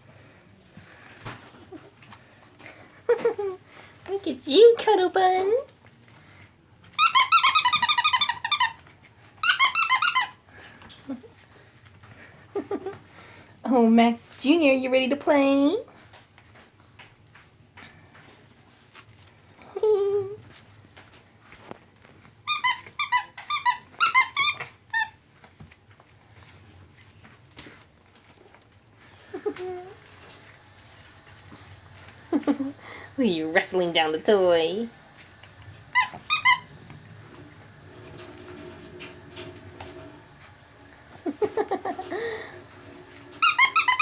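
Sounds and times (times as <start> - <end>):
squeaky pet toy squeaking: 7.0 - 8.8, 9.4 - 10.4, 22.5 - 25.1, 36.0 - 36.7, 43.4 - 44.0.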